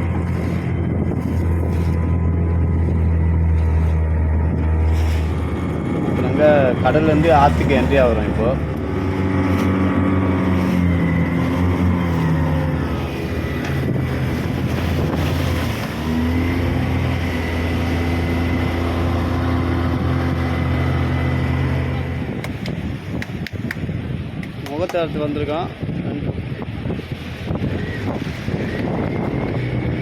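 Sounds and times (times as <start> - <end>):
boat motor running: 0.0 - 30.0
wind on microphone: 0.0 - 30.0.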